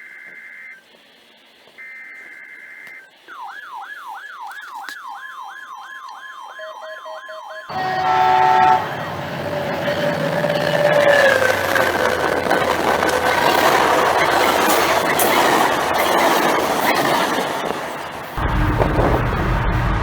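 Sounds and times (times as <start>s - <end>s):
siren yelping: 1.8s - 18.4s
two-note electronic tones: 6.0s - 12.5s
loud multi-pitch horn blast: 7.7s - 15.1s.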